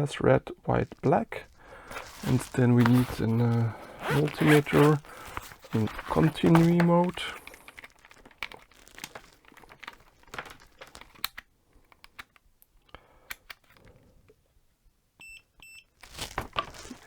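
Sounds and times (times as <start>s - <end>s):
handling clicks and crinkling: 0.1s - 14.4s, 16.0s - 17.0s
handling rustle: 0.4s - 12.2s, 16.0s - 17.0s.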